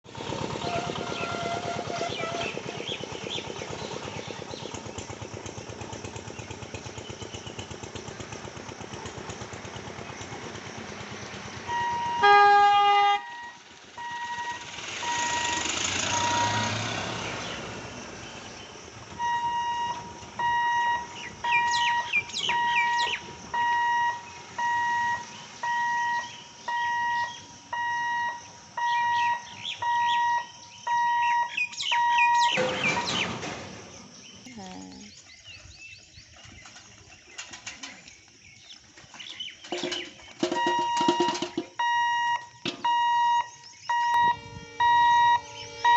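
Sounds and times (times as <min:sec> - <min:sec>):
diesel locomotive engine rumbling: 0:00.0 - 0:45.9
locomotive horn blast: 0:00.5 - 0:02.7, 0:11.7 - 0:14.3, 0:15.0 - 0:17.0, 0:43.9 - 0:45.9
electronic warning alarm beeps: 0:11.6 - 0:16.7, 0:19.2 - 0:33.2, 0:40.5 - 0:45.9.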